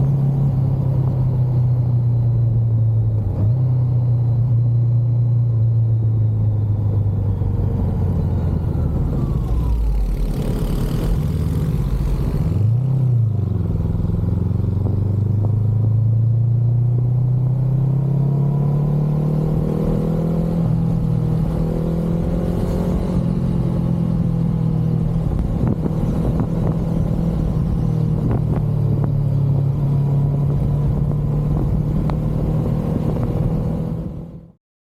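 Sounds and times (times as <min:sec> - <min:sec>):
motorcycle engine running: 0:04.2 - 0:17.0, 0:20.8 - 0:34.5.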